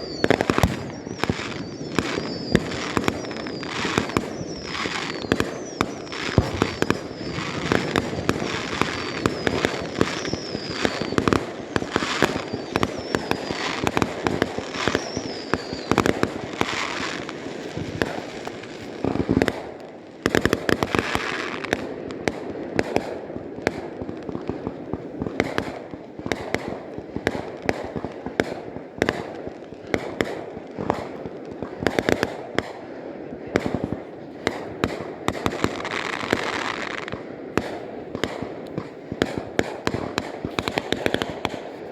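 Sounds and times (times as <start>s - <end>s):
fireworks bangs and crackling: 0.0s - 41.9s
fireworks falling whistles: 0.0s - 41.9s.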